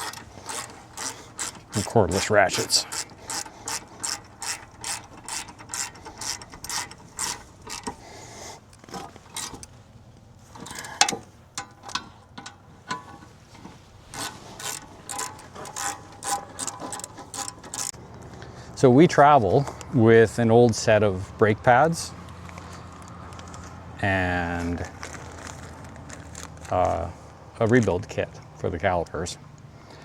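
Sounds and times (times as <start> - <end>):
ratchet wrench clicking: 0.0 - 9.7, 10.6 - 13.4, 14.0 - 18.0.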